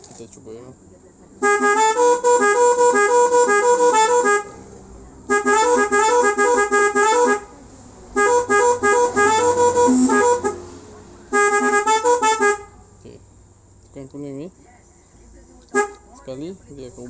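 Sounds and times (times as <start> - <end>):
multi-tone horn playing jingle: 5.3 - 7.4, 8.2 - 10.7.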